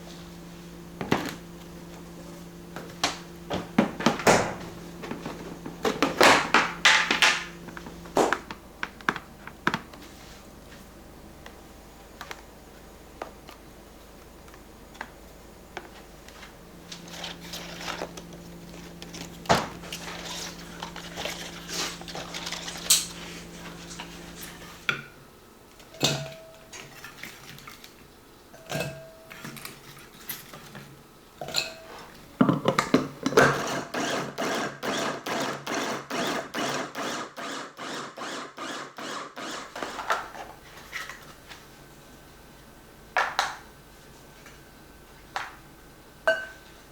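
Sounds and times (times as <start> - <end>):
steady low hum: 0.0 - 33.5, 39.7 - 46.9
containers being handled: 2.8 - 10.5, 14.4 - 24.9
electric food chopper pulsing: 33.4 - 40.3.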